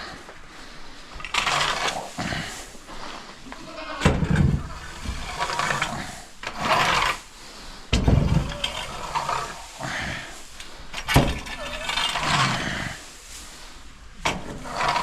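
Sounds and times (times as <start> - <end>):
metal scraper scraping manure: 1.2 - 2.7, 3.6 - 13.0, 14.2 - 15.0.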